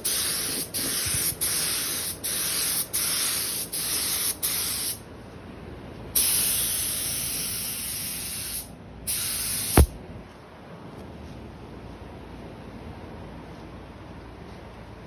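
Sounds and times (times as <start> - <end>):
paint spray gun hissing: 6.2 - 9.9.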